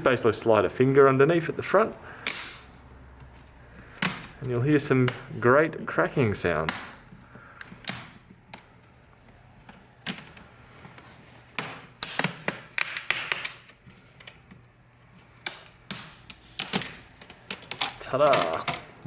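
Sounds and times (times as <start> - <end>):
plastic clips cracking loose: 2.2 - 3.3, 11.6 - 14.4, 15.4 - 19.0.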